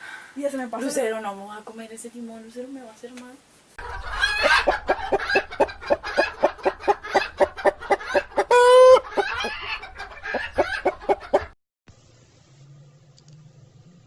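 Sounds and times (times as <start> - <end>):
chicken squawk: 3.8 - 11.5
chicken clucking: 3.8 - 11.6.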